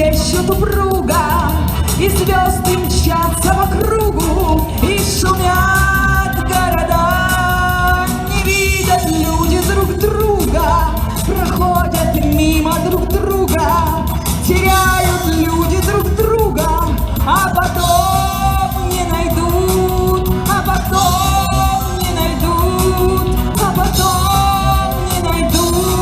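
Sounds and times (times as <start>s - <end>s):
instrumental backing track: 0.0s - 26.0s
woman singing pop song: 0.0s - 26.0s.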